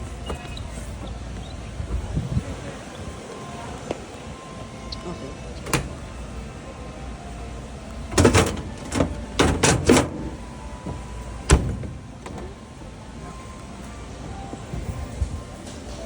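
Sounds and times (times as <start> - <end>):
washing machine knocks and clunks: 8.1 - 12.5.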